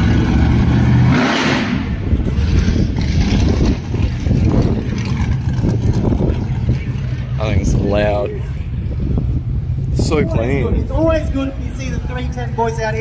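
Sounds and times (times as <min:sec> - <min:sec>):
car engine revving: 0:00.0 - 0:08.4.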